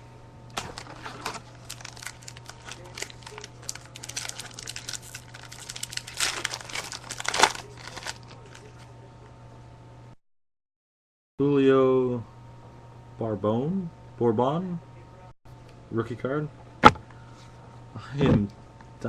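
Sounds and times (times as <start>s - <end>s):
wrapper crinkling and tearing: 0.6s - 8.8s.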